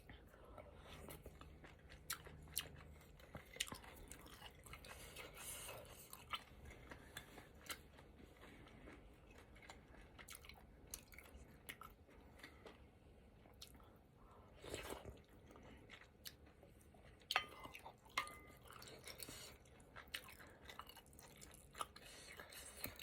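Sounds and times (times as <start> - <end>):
person chewing: 0.0 - 23.0.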